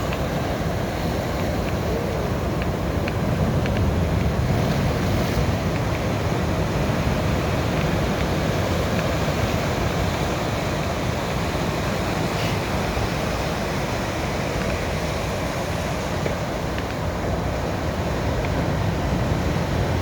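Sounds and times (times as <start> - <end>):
sea waves washing onto beach: 0.0 - 20.0.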